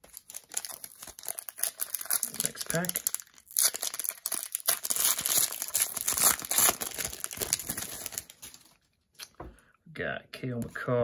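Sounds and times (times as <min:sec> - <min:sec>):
wrapper crinkling and tearing: 0:00.0 - 0:08.8.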